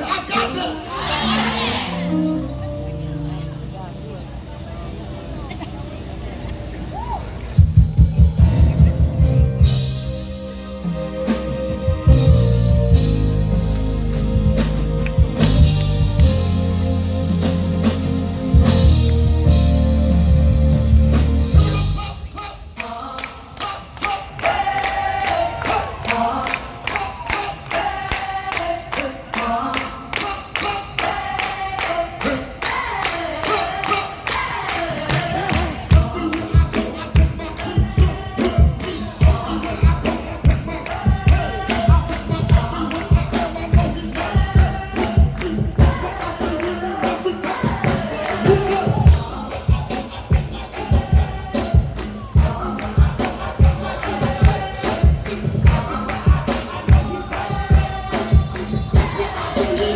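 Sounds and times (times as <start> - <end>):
gospel singing with backing voices: 0.0 - 2.8, 8.4 - 59.9
bass beat: 7.6 - 22.0, 35.6 - 59.9
rhythmic percussion: 7.6 - 59.9.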